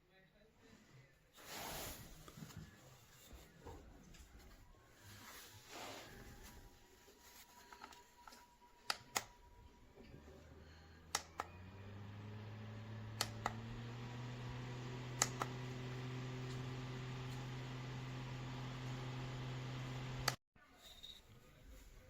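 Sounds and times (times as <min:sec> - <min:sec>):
fan motor hum: 0:09.7 - 0:20.4.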